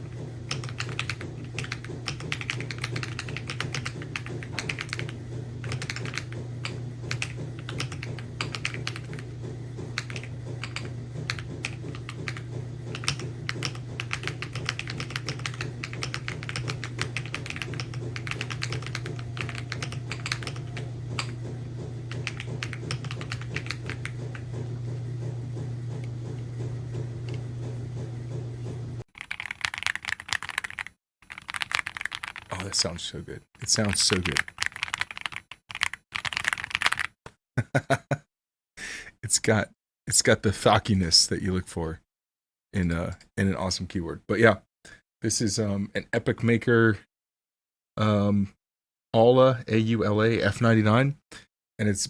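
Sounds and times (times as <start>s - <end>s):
steady low hum: 0.0s - 29.0s
mechanical keyboard typing: 0.4s - 24.8s, 29.2s - 32.8s, 33.6s - 37.2s.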